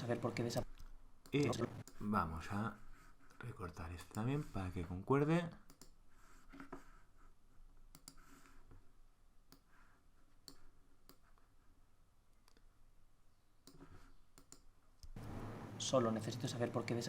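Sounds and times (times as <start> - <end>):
faint computer mouse clicks: 5.6 - 6.0, 7.9 - 8.3, 13.6 - 15.2.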